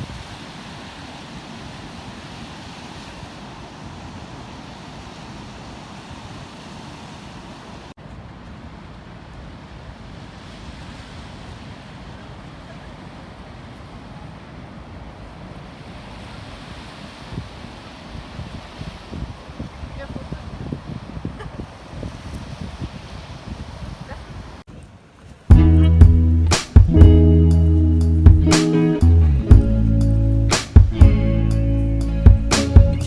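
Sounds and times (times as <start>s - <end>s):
wind on microphone: 16.6s - 24.8s.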